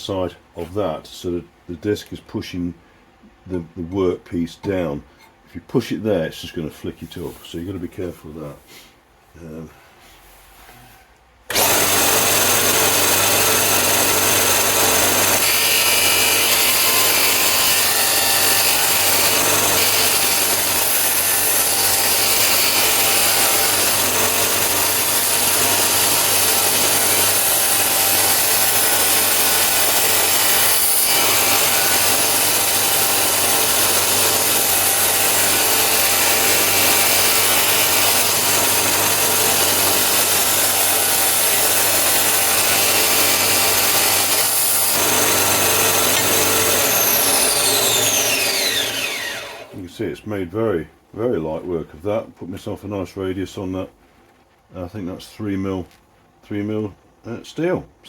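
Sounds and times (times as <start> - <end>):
bench sander motor hum: 11.5 - 49.8.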